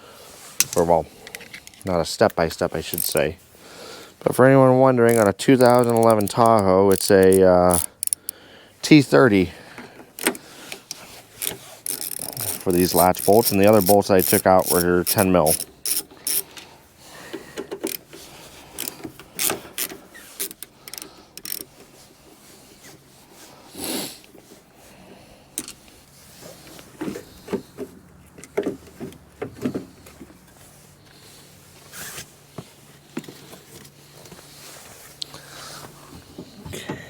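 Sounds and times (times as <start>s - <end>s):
hand ratchet clicking: 2.8s - 3.3s, 5.1s - 8.4s, 10.1s - 16.6s, 17.3s - 21.7s.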